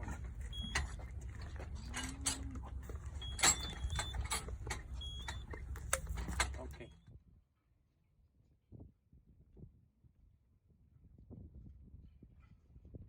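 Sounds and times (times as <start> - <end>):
clanks and knocks: 0.0 - 6.9.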